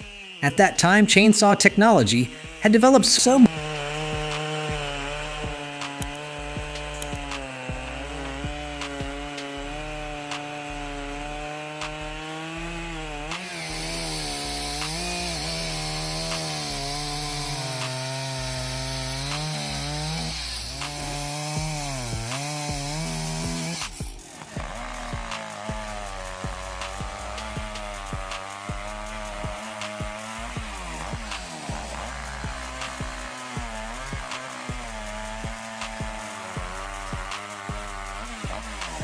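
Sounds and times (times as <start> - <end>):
chainsaw cutting wood: 0.0 - 39.0
harsh hiss: 13.5 - 39.0.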